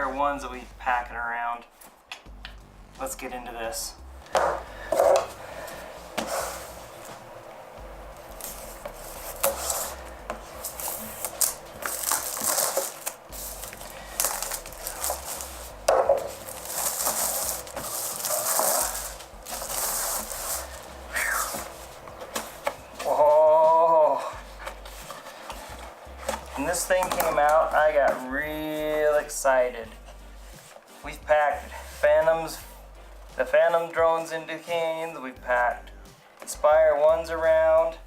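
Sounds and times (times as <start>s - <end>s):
packaging rustling and tearing: 8.2s - 27.8s.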